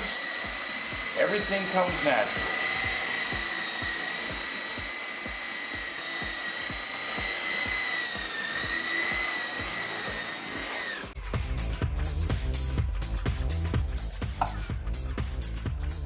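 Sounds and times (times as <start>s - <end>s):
electric motors whining: 0.0s - 11.3s
music with heavy beat: 0.0s - 16.0s.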